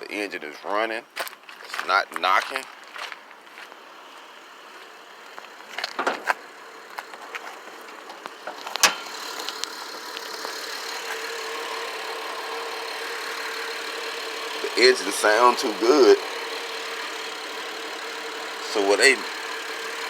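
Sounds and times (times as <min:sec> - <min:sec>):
engine idling: 0:02.5 - 0:20.0
sharp clicks: 0:08.7 - 0:10.5.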